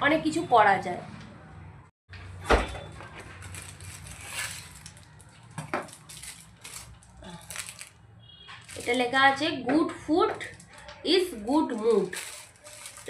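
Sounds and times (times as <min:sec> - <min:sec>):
packaging rustling and tapping: 0:03.0 - 0:07.9, 0:08.5 - 0:09.0, 0:11.8 - 0:13.0.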